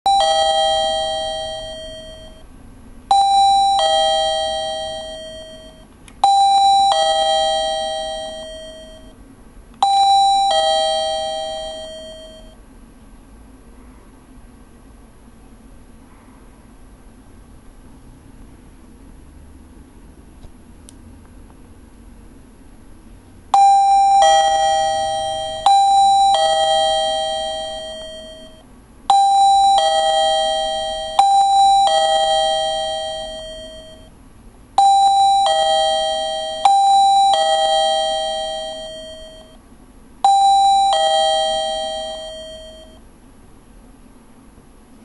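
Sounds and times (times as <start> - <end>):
doorbell two-note ding-dong: 0.1 - 2.5, 3.1 - 9.2, 9.8 - 12.6, 23.6 - 34.1, 34.8 - 39.6, 40.2 - 43.0.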